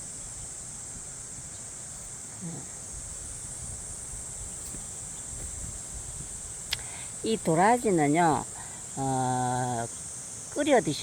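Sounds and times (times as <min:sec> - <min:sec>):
high-pitched insect chorus: 0:00.0 - 0:11.0.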